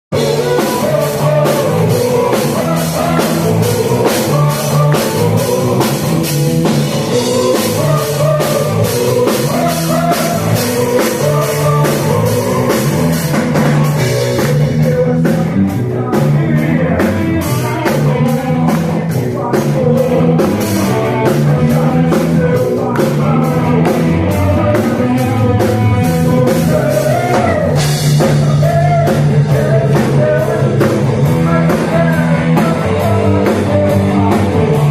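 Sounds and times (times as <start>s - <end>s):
rock band playing: 0.1s - 34.9s.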